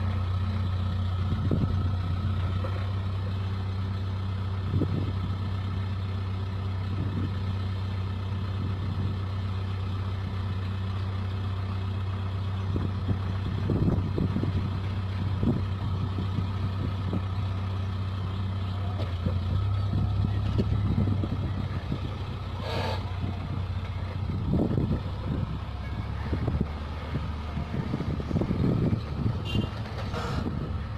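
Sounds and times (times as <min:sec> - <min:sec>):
backhoe diesel engine running: 0:00.0 - 0:30.9
brief squeal: 0:22.6 - 0:23.1.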